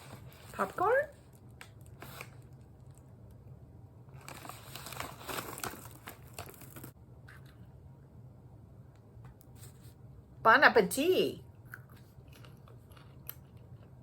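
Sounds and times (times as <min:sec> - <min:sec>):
snack bag crinkling: 0:00.0 - 0:03.4, 0:04.1 - 0:07.0.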